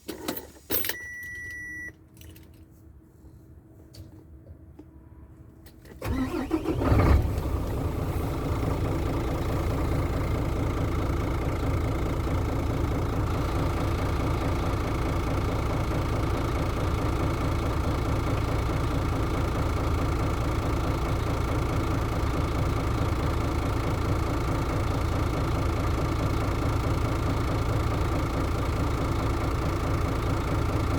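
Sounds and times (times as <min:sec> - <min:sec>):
diesel truck engine starting: 0:05.7 - 0:30.9
diesel engine idling: 0:06.0 - 0:30.9.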